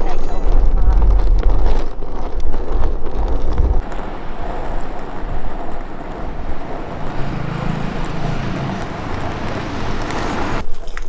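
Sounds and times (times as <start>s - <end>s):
vehicle passing with engine hum: 3.8s - 10.6s.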